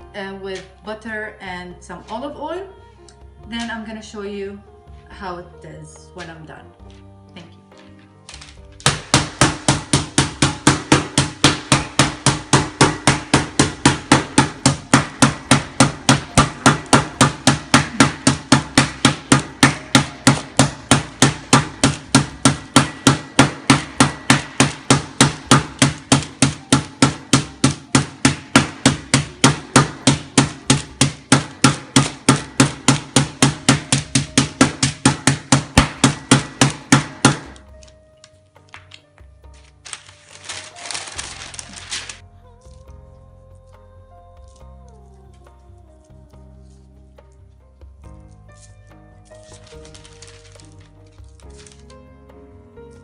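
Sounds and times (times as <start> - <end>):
meat being pounded: 8.8 - 37.7.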